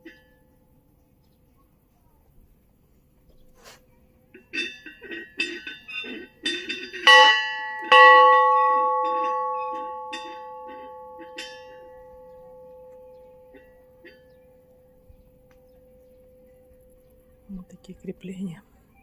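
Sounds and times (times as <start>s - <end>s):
small bronze bell ringing: 4.4s - 18.1s.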